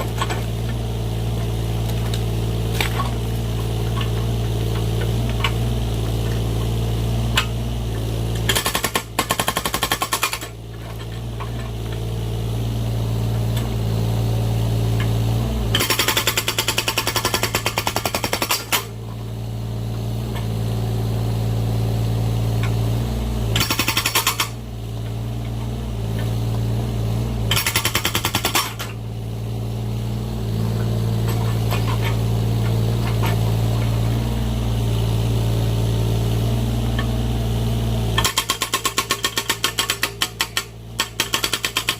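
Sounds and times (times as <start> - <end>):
excavator engine running: 0.0 - 41.9
hydraulic breaker hammering: 8.4 - 11.2, 15.7 - 19.0, 23.5 - 24.6, 27.4 - 29.0, 38.2 - 41.9.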